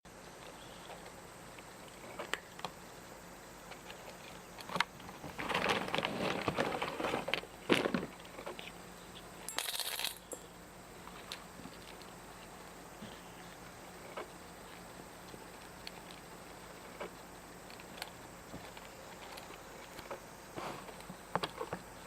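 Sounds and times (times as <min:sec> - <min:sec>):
hissing rustle: 0:10.8 - 0:22.0
cat chewing crunchily: 0:11.0 - 0:22.0.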